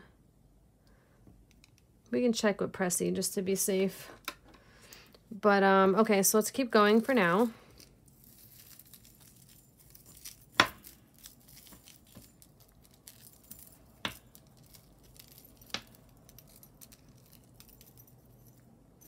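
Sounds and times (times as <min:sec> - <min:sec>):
jewelry clicking and clinking: 0:06.8 - 0:19.0.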